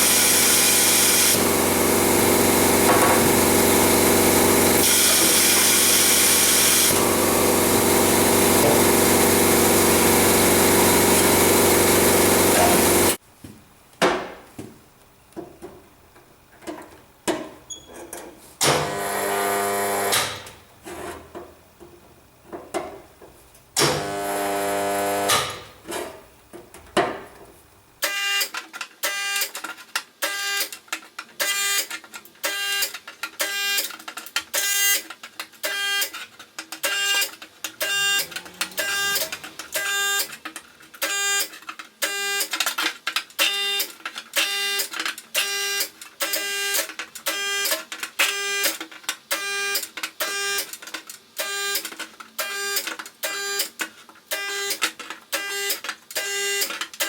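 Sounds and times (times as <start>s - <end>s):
spot welder buzzing: 0.0s - 13.2s, 18.6s - 20.6s, 23.8s - 25.8s, 36.8s - 40.4s.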